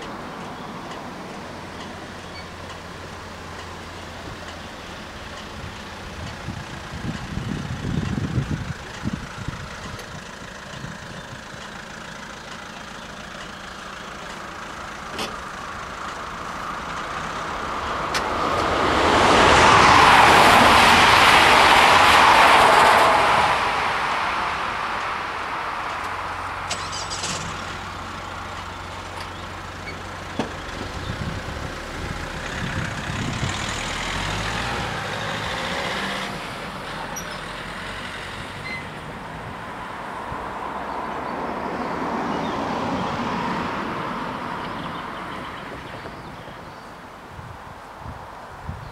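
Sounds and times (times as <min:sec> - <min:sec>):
road vehicles idling and pulling away: 0:00.0 - 0:48.9
train passing: 0:16.8 - 0:25.4.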